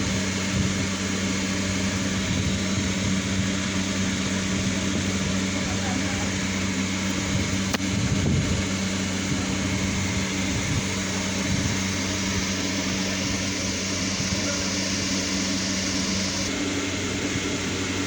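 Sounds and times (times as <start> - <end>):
low hum: 6.4 - 16.5
constant hiss: 8.7 - 16.5.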